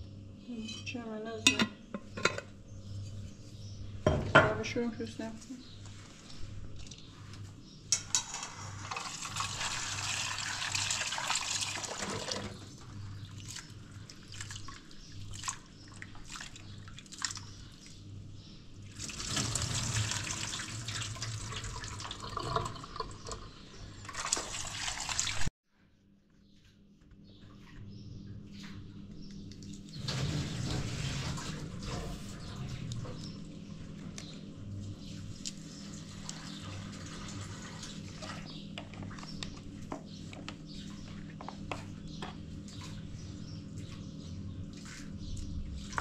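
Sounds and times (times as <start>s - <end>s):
water running: 8.2s - 12.6s, 18.9s - 25.5s, 35.9s - 38.6s.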